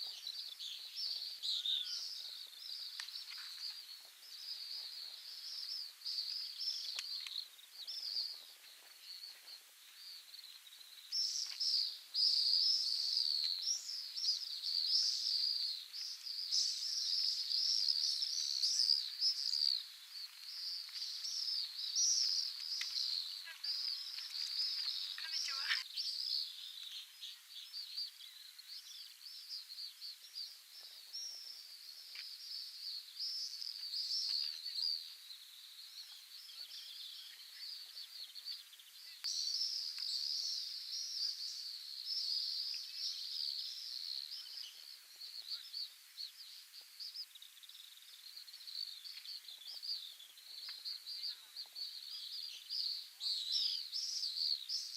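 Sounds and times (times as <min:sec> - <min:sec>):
swifts twittering screams: 0:00.0 - 0:08.4, 0:11.1 - 0:29.5.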